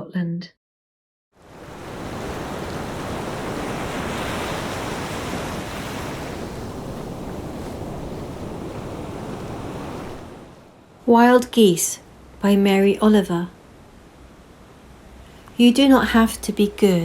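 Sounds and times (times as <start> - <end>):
sea waves washing on shore: 1.4 - 12.6, 13.2 - 16.1
wind buffeting microphone: 1.6 - 11.0.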